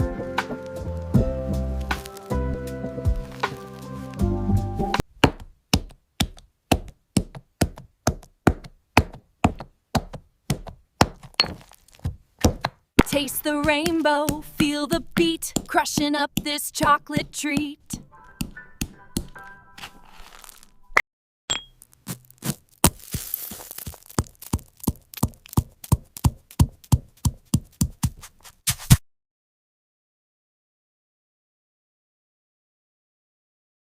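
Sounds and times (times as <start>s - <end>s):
music: 0.0s - 5.0s, 17.4s - 20.2s
candy being crushed: 1.8s - 2.4s, 3.1s - 4.2s, 11.2s - 12.1s, 19.2s - 20.9s, 21.7s - 26.9s.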